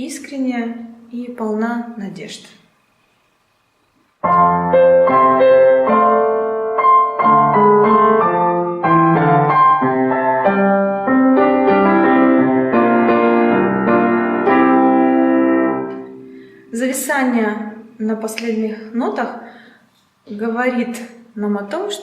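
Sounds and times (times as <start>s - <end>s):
solo piano playing slow chords: 4.2s - 16.6s.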